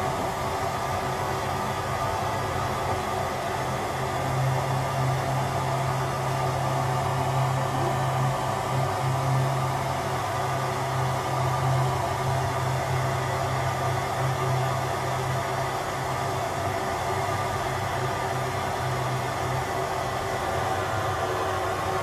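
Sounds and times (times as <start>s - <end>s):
train low hum and drone: 0.0s - 22.0s
rushing hiss of train: 18.9s - 22.0s.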